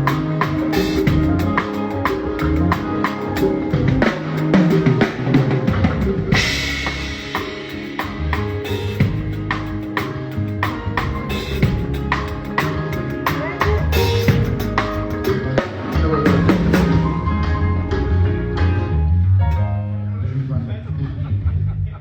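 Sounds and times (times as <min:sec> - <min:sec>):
drum kit kick and snare: 0:00.0 - 0:17.2
live band instrumental groove: 0:00.0 - 0:18.9
cymbal crash: 0:06.4 - 0:09.8.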